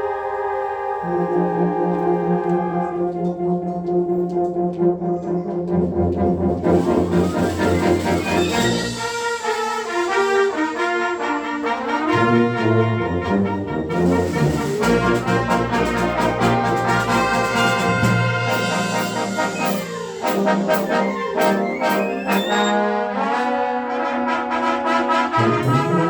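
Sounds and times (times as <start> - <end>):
concert band playing: 6.6 - 22.9, 25.2 - 26.0.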